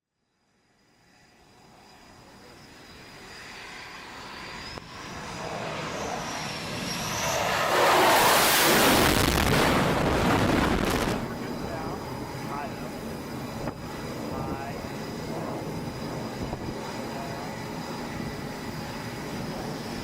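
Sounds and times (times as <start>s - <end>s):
high jet engine whine: 0.4s - 20.0s
jet engines roaring: 1.0s - 20.0s.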